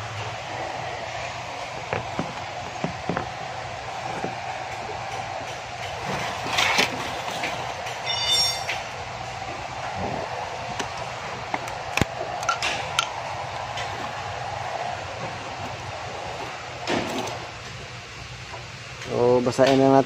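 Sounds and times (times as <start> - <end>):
steady background hum: 0.0 - 20.0
high metallic ring: 7.9 - 9.0.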